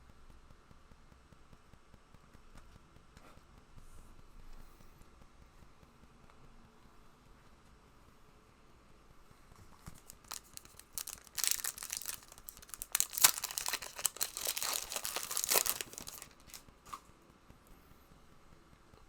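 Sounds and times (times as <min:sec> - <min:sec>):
foil wrapper tearing and crinkling: 0:09.9 - 0:17.0.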